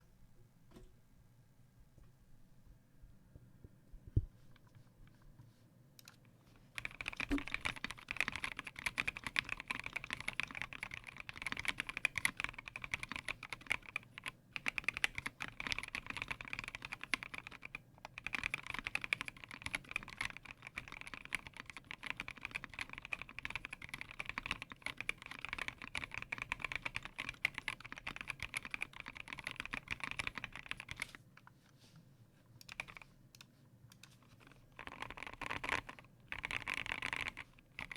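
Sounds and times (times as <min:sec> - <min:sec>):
mechanical keyboard typing: 0:06.8 - 0:31.2, 0:32.6 - 0:37.9.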